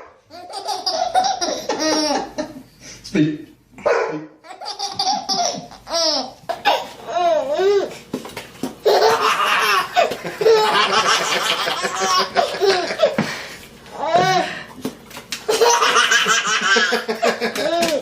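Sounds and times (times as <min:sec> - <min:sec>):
baby laughing hysterically: 0:00.3 - 0:02.6, 0:04.4 - 0:07.9, 0:08.8 - 0:13.2, 0:15.5 - 0:18.0.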